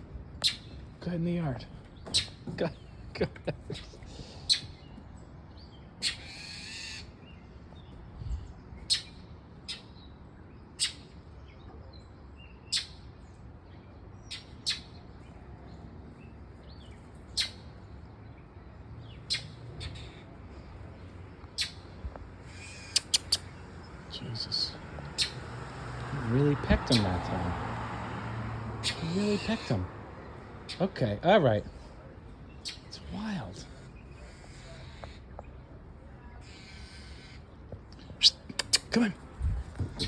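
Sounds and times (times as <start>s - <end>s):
birds giving sharp alarm calls: 2.0s - 3.1s, 5.9s - 7.2s, 17.3s - 17.8s, 19.0s - 20.3s, 21.5s - 27.4s, 28.7s - 31.2s, 32.6s - 35.3s, 36.4s - 40.0s.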